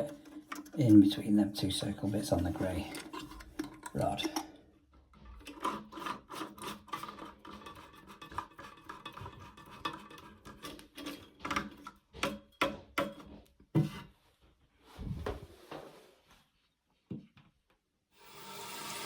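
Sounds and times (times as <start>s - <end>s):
plastic parts clicking and rattling: 2.7s - 4.6s.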